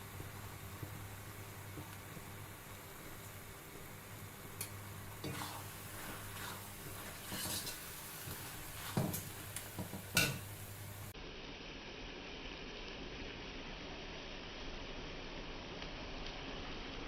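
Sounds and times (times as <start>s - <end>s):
utensil stirring and scraping in pot: 4.5s - 10.5s.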